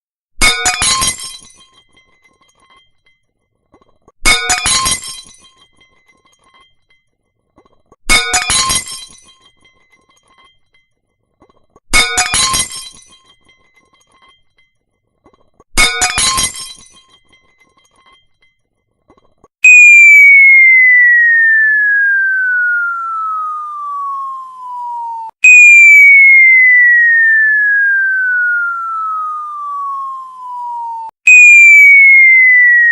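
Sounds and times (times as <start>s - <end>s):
broken pieces tinkling: 0.4s - 19.5s
crockery shattering: 0.4s - 19.5s
high whistle falling in pitch: 19.6s - 32.9s.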